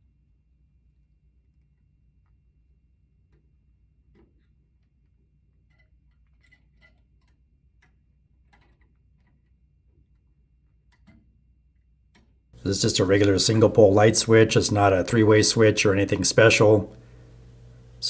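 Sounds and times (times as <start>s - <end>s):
small clicks from handling wires: 4.1s - 11.3s.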